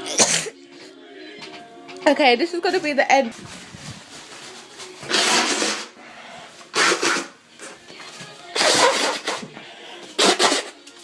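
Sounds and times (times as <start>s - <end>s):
person sneezing: 0.0s - 0.6s.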